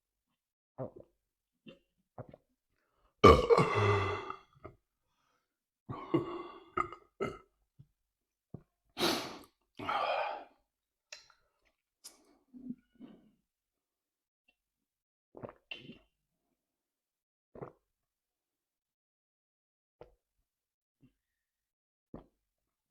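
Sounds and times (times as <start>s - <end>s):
man belching: 3.2s - 4.5s, 5.9s - 7.4s.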